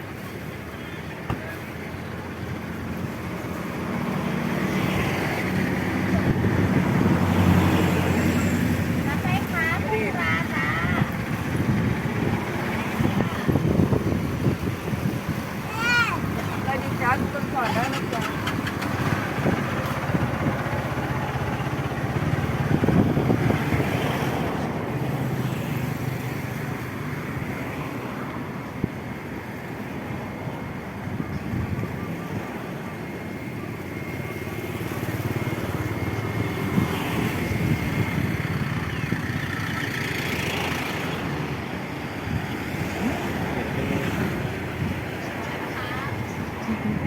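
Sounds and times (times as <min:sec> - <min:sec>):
motor engine running: 0:02.0 - 0:27.6.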